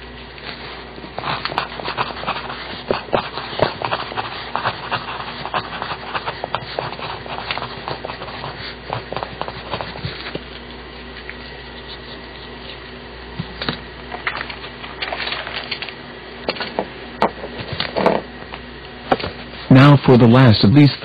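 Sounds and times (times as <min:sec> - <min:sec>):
pencil scratching on paper: 0:00.6 - 0:10.6.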